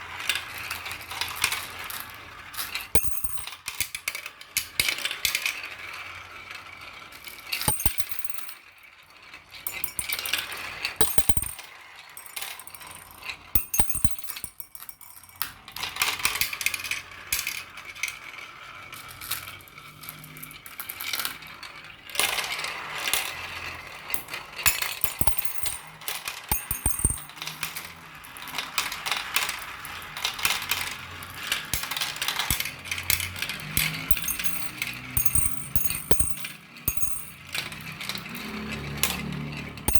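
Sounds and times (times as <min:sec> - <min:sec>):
marbles rolling and clacking: 0:02.6 - 0:03.9, 0:07.5 - 0:08.7, 0:09.7 - 0:17.7, 0:22.2 - 0:27.9, 0:28.7 - 0:39.9.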